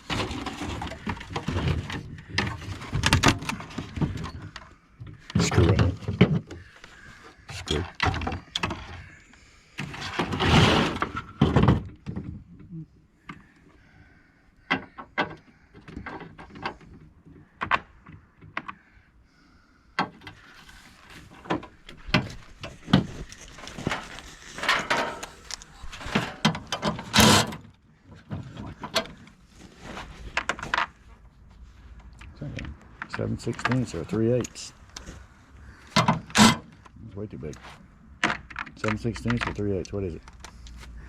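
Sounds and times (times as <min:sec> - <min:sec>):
tools knocking and scraping metal: 0:24.6 - 0:25.4.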